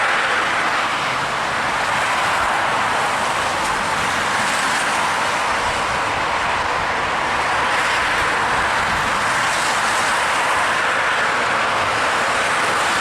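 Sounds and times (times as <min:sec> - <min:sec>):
traffic driving through water: 0:00.0 - 0:13.0.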